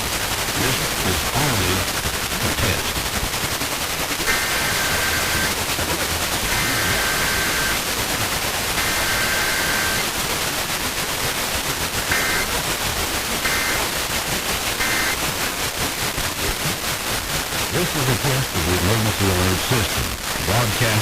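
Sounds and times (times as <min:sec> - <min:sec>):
radio static hiss: 0:00.0 - 0:21.0
buzzing two-tone data bursts: 0:04.2 - 0:05.7, 0:06.3 - 0:08.1, 0:08.7 - 0:10.1, 0:12.0 - 0:12.6, 0:13.4 - 0:14.0, 0:14.7 - 0:15.3.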